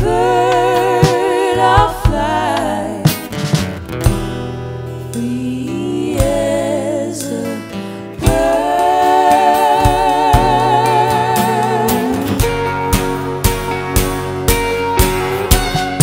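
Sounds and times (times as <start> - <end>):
voices singing with vibrato: 0.0 - 3.4, 5.1 - 13.0
drum hits: 0.0 - 4.6, 12.4 - 16.0
bass line: 0.0 - 7.5, 8.2 - 16.0
pop-folk band playing live: 0.0 - 16.0.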